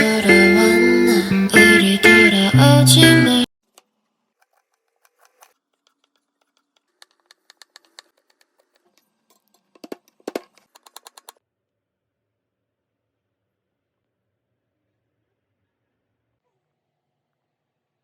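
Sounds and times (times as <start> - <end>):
sharp clicks and taps: 3.8 - 11.4.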